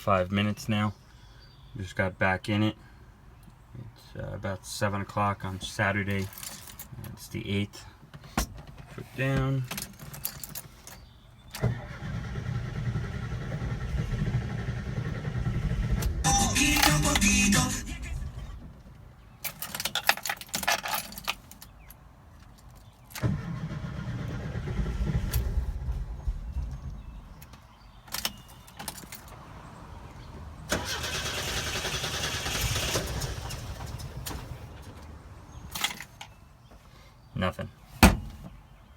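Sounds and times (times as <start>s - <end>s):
engine cranking on starter: 11.6s - 18.7s, 23.2s - 27.4s, 30.6s - 35.0s.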